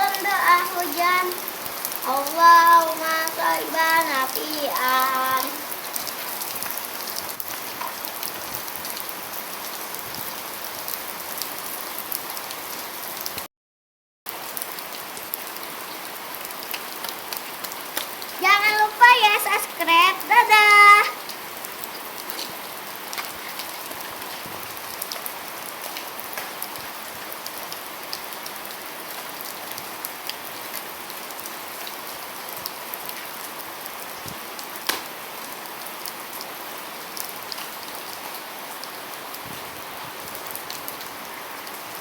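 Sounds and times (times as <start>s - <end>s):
raindrop ticks: 0.0s - 9.1s, 16.4s - 30.8s, 34.2s - 35.1s
rain falling: 0.0s - 13.5s, 14.3s - 42.0s.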